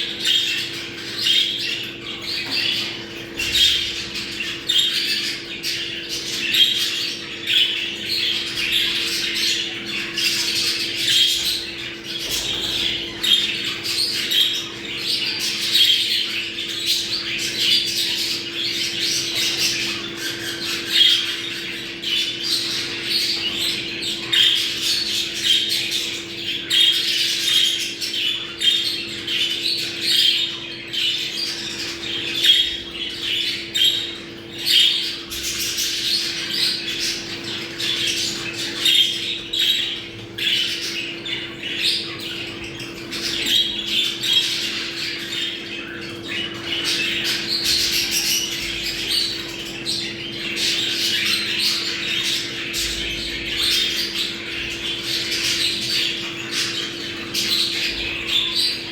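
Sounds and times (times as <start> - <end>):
budgerigars chattering and squawking: 0.0 - 58.9.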